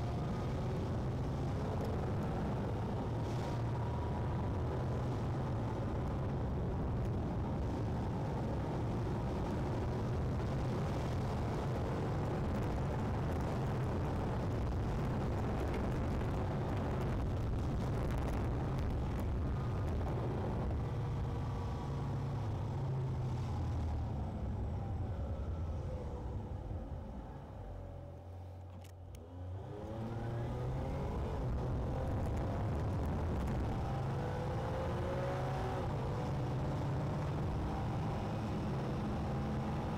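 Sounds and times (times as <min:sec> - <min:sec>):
car engine and road rumble: 0:00.0 - 0:39.9.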